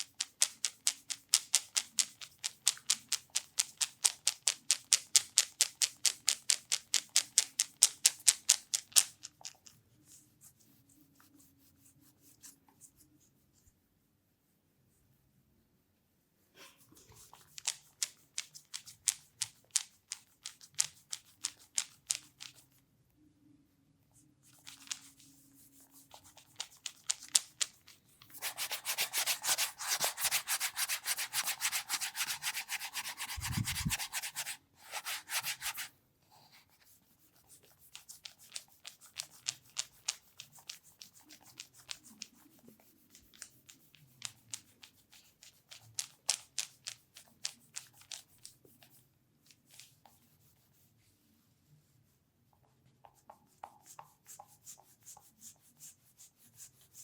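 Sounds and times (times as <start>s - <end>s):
hands rubbing oiled skin: 24.5s - 35.9s, 36.6s - 51.2s.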